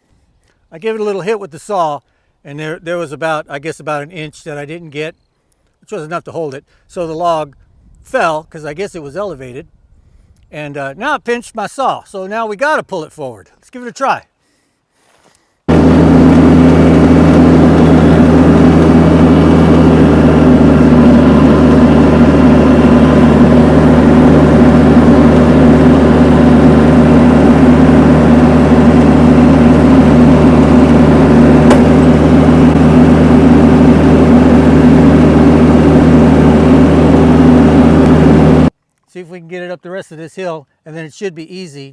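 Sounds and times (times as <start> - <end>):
tractor engine running: 15.7 - 38.7.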